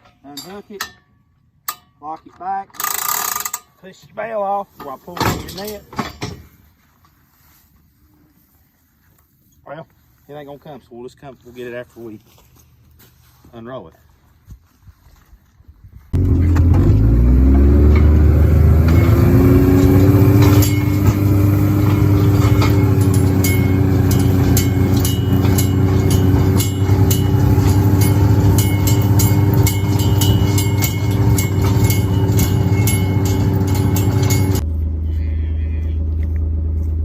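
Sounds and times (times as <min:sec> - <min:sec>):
metallic clanks and rattles: 0:00.0 - 0:03.8, 0:04.8 - 0:06.6, 0:16.2 - 0:34.7
steady whine: 0:16.2 - 0:36.4
tractor engine running: 0:16.2 - 0:37.0.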